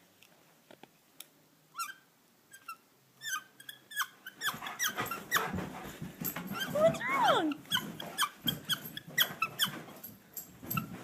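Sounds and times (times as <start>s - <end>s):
squeaky dog toy squeaks: 1.7s - 5.5s.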